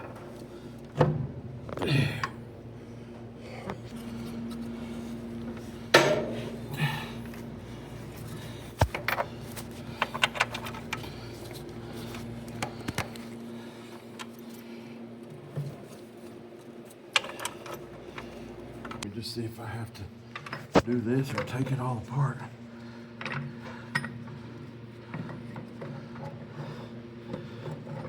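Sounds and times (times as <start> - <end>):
steady low hum: 0.0 - 28.0
metal clanks and rattles: 5.9 - 6.6.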